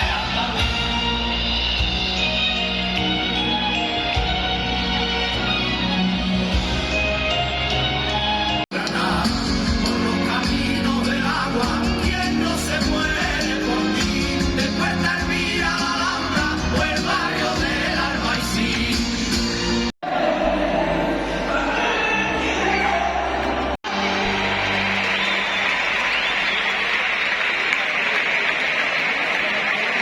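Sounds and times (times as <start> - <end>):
pop-rock song with singing: 0.0 - 1.6, 8.7 - 21.8
crowd noise hiss: 23.4 - 30.0.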